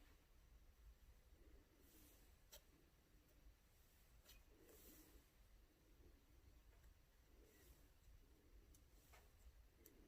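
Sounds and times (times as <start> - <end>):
faint clicks: 8.6 - 10.0.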